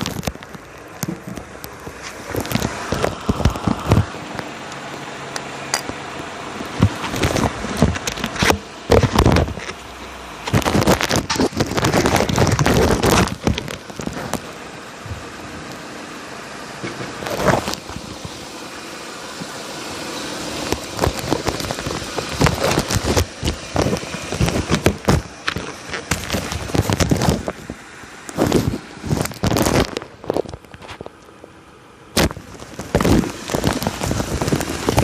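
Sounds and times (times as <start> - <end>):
road noise: 0.0 - 35.0.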